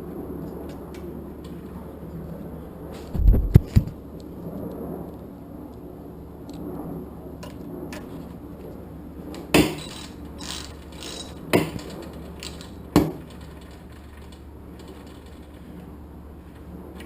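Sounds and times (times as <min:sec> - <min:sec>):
ratchet clicking: 0:09.7 - 0:14.0.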